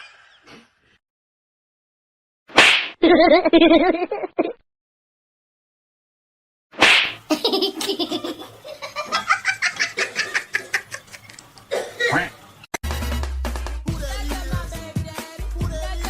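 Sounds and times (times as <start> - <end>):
person laughing hard: 7.3 - 11.3
music with strong low beat: 12.8 - 16.0.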